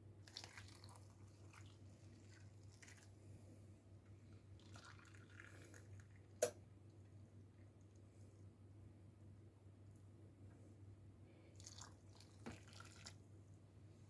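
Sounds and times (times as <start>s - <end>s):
low steady hum: 0.0s - 14.0s
hot water trickling: 0.2s - 3.4s, 4.2s - 8.1s, 11.6s - 13.3s.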